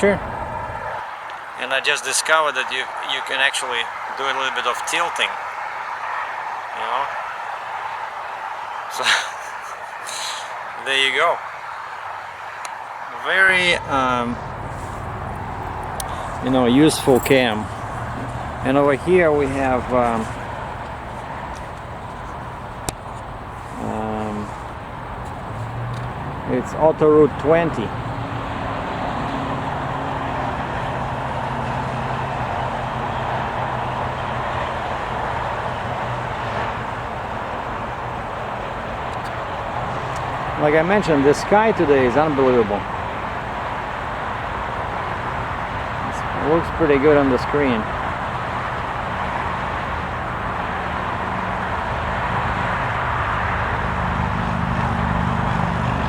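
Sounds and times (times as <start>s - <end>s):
highway traffic rushing: 0.0s - 56.0s
low engine hum: 13.7s - 56.0s.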